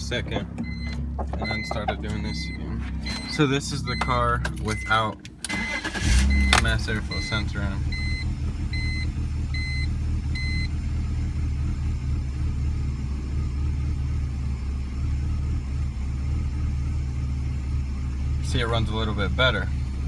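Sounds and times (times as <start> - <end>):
car engine idling roughly: 0.0 - 4.9, 5.5 - 20.0
short beeps: 0.6 - 6.6.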